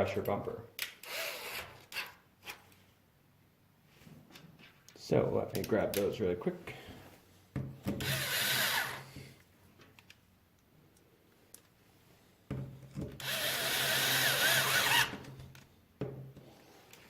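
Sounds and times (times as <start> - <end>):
power screwdriver whining: 1.0 - 2.2, 8.0 - 9.1, 13.2 - 15.4.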